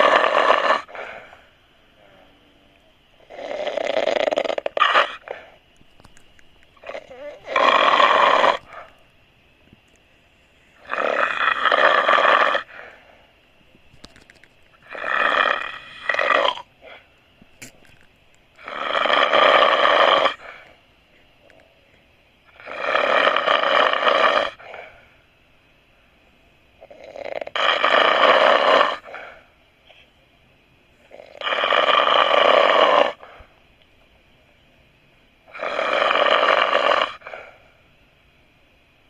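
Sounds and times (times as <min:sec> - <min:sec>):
person snoring loudly: 0:00.0 - 0:01.2, 0:03.2 - 0:05.3, 0:06.8 - 0:08.8, 0:10.8 - 0:12.8, 0:14.8 - 0:16.7, 0:18.6 - 0:20.6, 0:22.5 - 0:24.7, 0:26.8 - 0:29.1, 0:31.1 - 0:33.2, 0:35.5 - 0:37.4
quiet breathing: 0:00.0 - 0:04.4, 0:06.8 - 0:13.9, 0:14.8 - 0:22.6, 0:23.3 - 0:27.5, 0:29.0 - 0:31.5, 0:33.1 - 0:34.7, 0:37.1 - 0:38.0.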